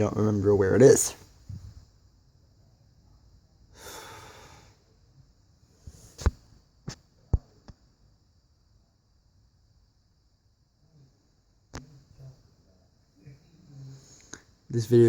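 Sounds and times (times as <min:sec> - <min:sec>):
faint high hiss: 0:00.0 - 0:15.0
person breathing out: 0:03.8 - 0:04.8.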